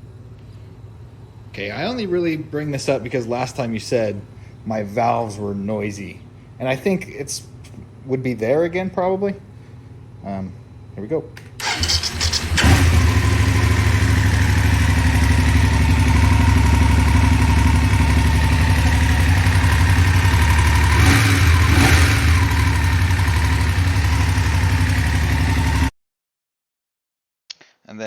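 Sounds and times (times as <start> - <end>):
motorcycle engine idling: 11.6 - 25.9.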